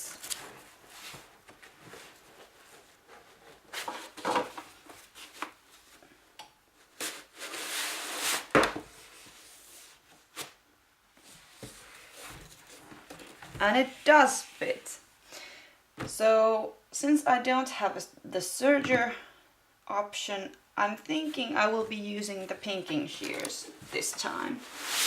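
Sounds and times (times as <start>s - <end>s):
fabric rubbing and rustling: 21.3s - 25.0s.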